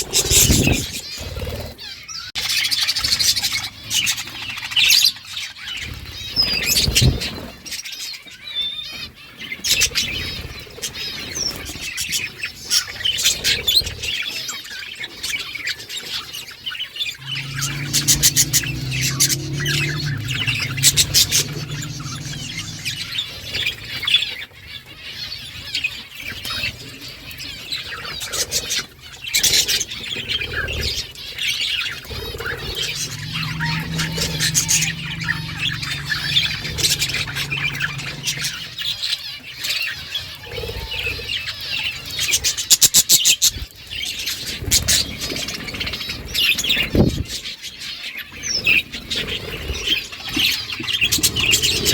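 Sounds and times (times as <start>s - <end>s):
low steady hum: 17.2s - 23.8s, 32.1s - 39.0s.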